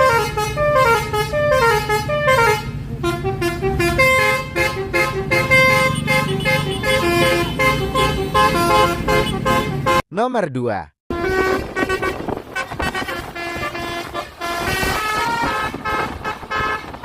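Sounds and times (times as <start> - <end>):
musical air horn playing a tune: 0.0 - 10.0, 11.1 - 17.0.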